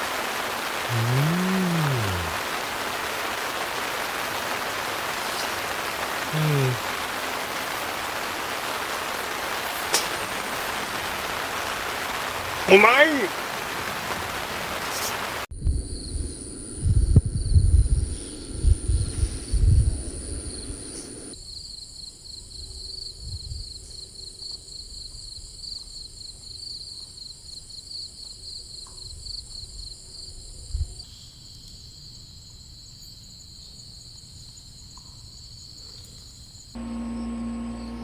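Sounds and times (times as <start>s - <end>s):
rain: 0.0s - 21.4s, 36.8s - 38.0s
night insects chirping: 0.0s - 30.4s, 31.0s - 38.0s.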